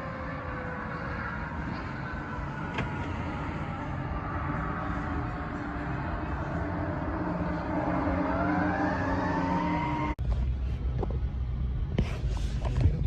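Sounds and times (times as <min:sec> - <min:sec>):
fire truck siren: 0:00.0 - 0:10.2
vehicle engine rumble: 0:00.0 - 0:13.0.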